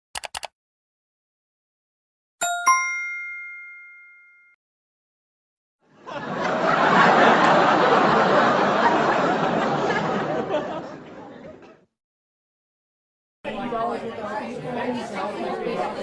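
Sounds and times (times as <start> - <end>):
bell ding: 2.4 - 4.6.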